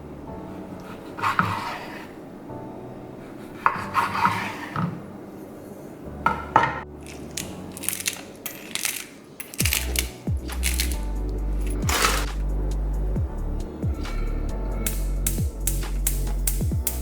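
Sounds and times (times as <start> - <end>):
utensils and dishes clinking: 6.4 - 11.0, 11.7 - 12.4.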